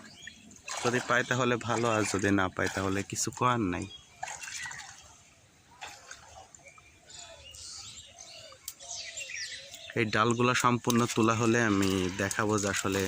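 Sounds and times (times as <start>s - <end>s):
birds chirping and calling: 0.0s - 13.0s
faint outdoor background: 0.0s - 13.0s.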